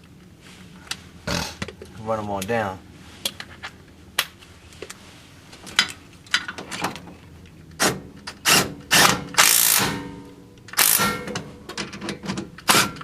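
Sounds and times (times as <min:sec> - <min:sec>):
impact wrench bursts: 0:08.4 - 0:11.4.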